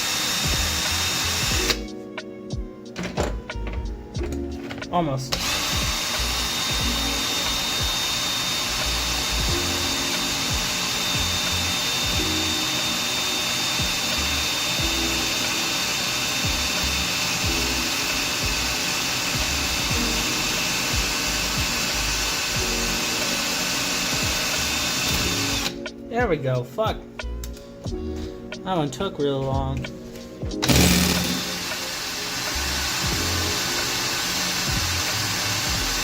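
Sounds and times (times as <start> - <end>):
electric drill whining: 0.0 - 1.9, 5.3 - 25.8, 30.6 - 36.0
background music with bass: 0.0 - 13.0, 13.8 - 15.7, 16.4 - 36.0.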